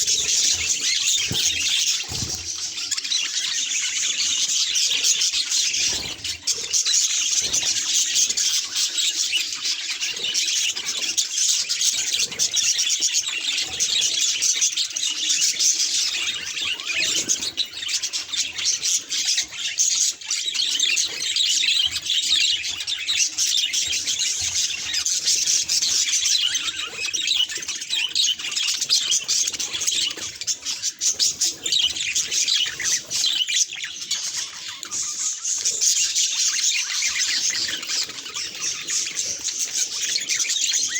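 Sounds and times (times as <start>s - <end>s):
budgerigars chirping: 0.0s - 40.9s.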